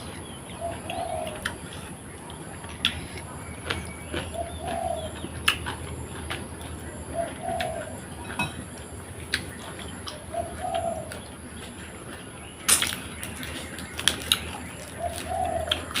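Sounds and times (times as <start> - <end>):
dove cooing: 0.5 - 2.0, 4.3 - 5.4, 6.7 - 9.0, 9.6 - 11.7, 14.7 - 16.0.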